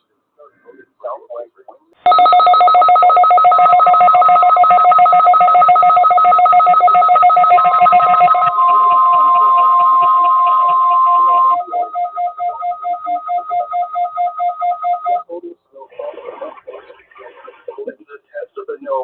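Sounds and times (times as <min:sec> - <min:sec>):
pulsing two-tone beeping: 0:02.1 - 0:15.2
steady warning tone: 0:02.1 - 0:15.2.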